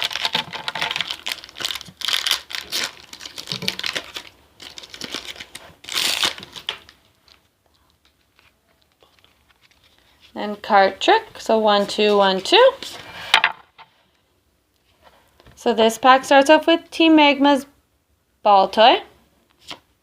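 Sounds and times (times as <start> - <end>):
foil wrapper crinkling and tearing: 0.0 - 7.5.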